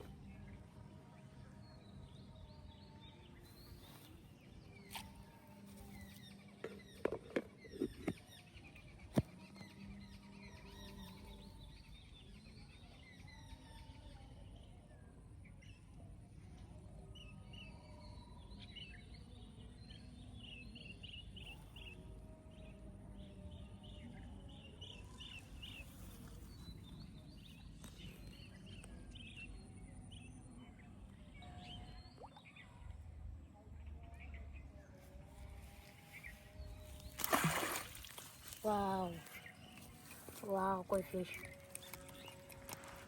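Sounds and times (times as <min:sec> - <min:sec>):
small birds chirping: 0:35.8 - 0:43.0.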